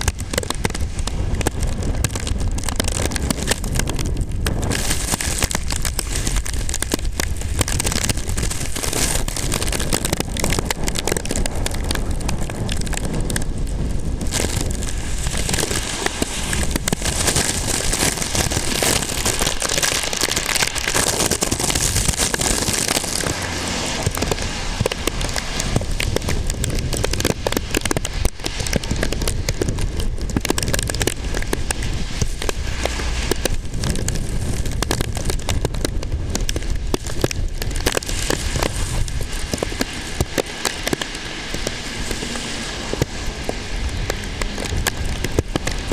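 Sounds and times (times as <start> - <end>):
wind buffeting microphone: 0.0 - 45.9
heavy rain hissing: 14.7 - 27.0.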